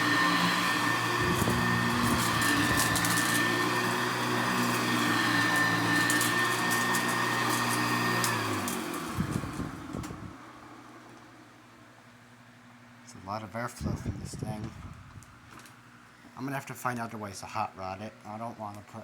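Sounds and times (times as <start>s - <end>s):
vacuum cleaner whining: 0.0s - 12.0s.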